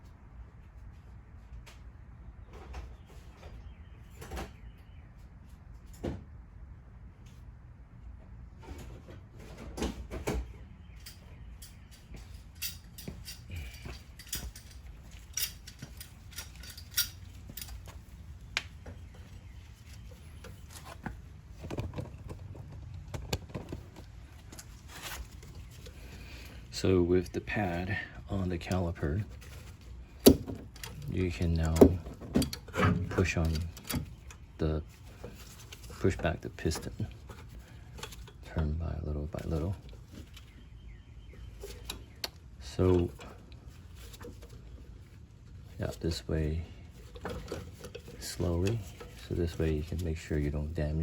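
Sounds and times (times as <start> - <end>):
metal tools clinking: 10.9 - 18.1, 29.1 - 38.5, 46.9 - 50.8.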